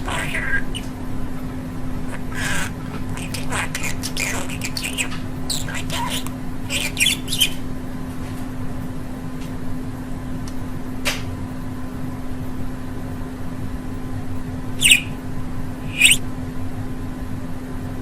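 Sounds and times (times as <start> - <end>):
budgie chirp: 0.0 - 0.9, 2.0 - 7.6, 14.8 - 15.2, 15.8 - 16.2.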